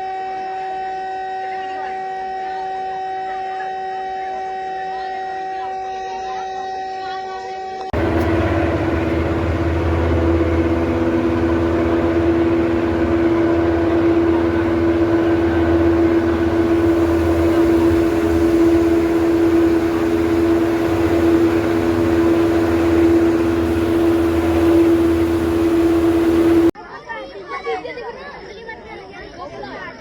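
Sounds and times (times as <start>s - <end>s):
warning siren steady tone: 0.0s - 5.9s, 8.0s - 26.8s
low rumble: 8.0s - 26.8s.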